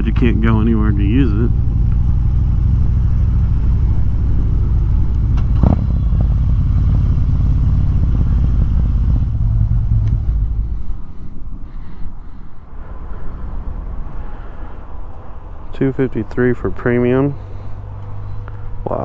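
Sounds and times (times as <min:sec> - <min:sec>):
motorcycle engine running: 0:00.0 - 0:11.2
road and wind noise: 0:00.0 - 0:19.0.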